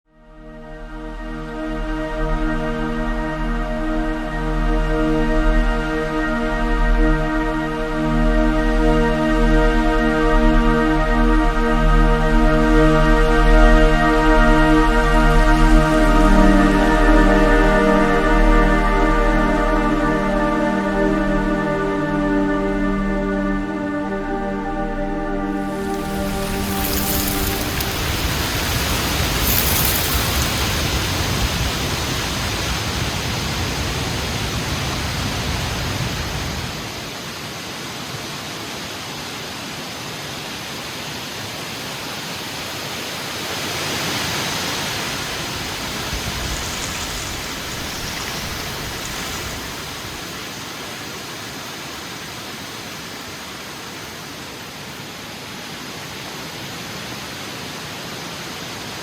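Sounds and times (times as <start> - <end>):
heavy wind rushing: 44.5 - 50.6.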